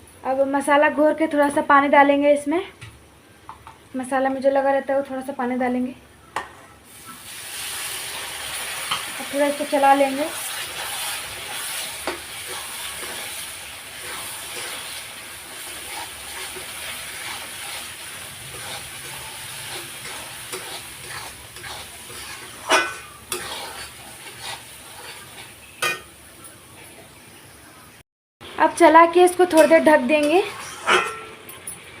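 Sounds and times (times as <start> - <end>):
spice mixture sizzling in a pan: 6.9 - 26.4
spoon scraping a pan: 7.8 - 26.2, 29.6 - 31.6.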